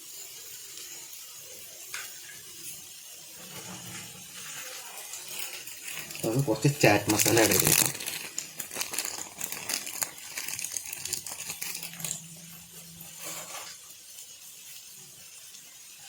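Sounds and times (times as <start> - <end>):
plastic packet crinkling: 4.5 - 13.8.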